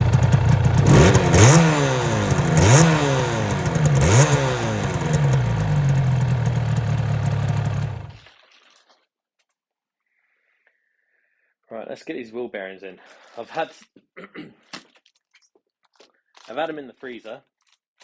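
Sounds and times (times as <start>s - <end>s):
motorcycle engine revving and idling: 0.0s - 8.2s.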